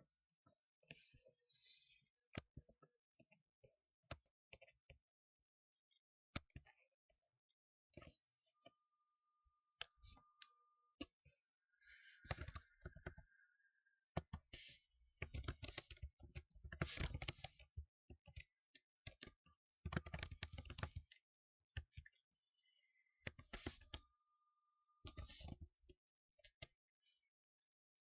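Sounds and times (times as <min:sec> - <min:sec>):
typing on computer keyboard: 0:12.3 - 0:13.2, 0:15.2 - 0:16.1, 0:16.7 - 0:17.6, 0:19.1 - 0:21.0.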